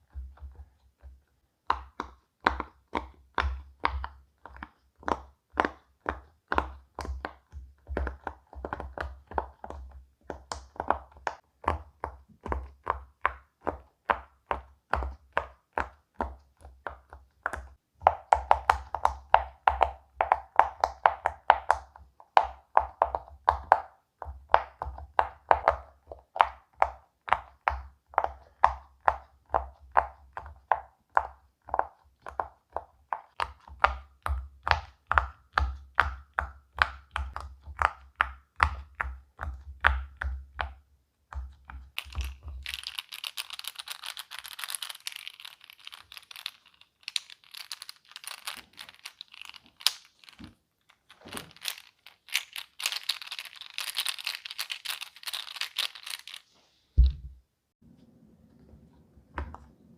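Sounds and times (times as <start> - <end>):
crinkling and rustling: 41.9 - 59.8.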